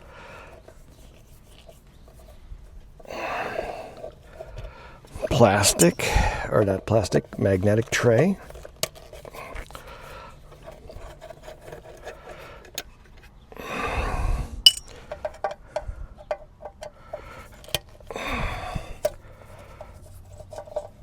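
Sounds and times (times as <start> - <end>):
heavy exhales: 18.1 - 19.0.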